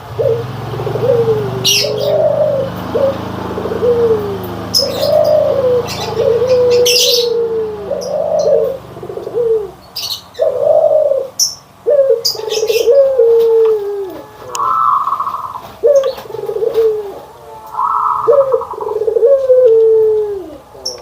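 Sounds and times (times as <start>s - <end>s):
high chirps: 0.0s - 10.6s, 14.2s - 16.2s, 17.6s - 19.0s
doves cooing: 0.0s - 21.0s.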